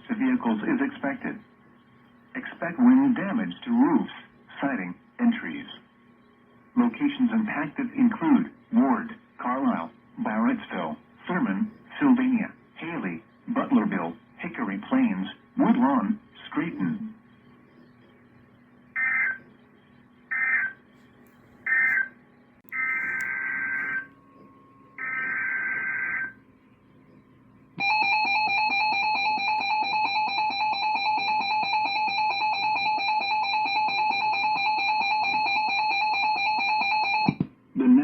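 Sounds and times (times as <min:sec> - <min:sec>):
two-tone alert signal: 0:22.7 - 0:26.4.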